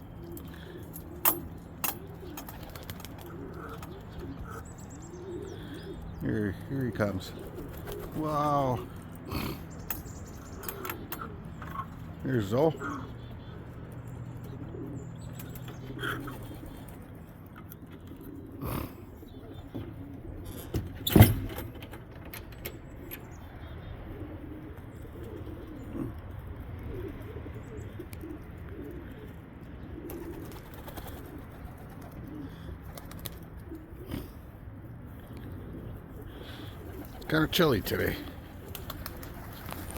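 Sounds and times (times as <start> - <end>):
pigeons cooing: 0.0 - 39.9.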